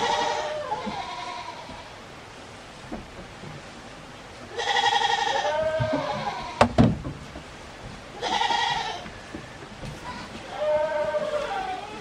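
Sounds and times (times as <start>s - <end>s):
goat bleating: 0.0s - 2.0s, 4.5s - 6.7s, 8.2s - 9.1s, 10.0s - 12.0s
sharp knocks: 6.6s - 7.5s.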